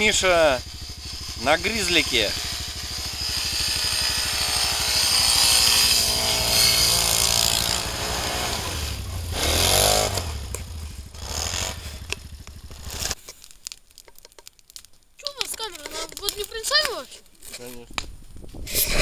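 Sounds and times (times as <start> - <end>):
atv engines riding past: 0.0 - 13.2.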